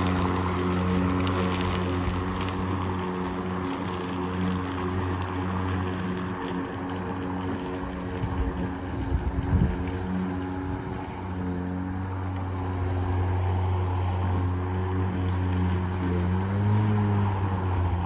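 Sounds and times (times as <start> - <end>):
lawn mower humming: 0.0 - 18.0.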